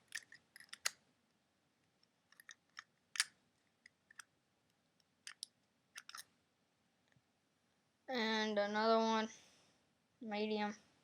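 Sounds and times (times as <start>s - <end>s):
toy parts clicking and tapping: 0.0s - 1.0s, 2.0s - 4.3s, 5.0s - 6.3s.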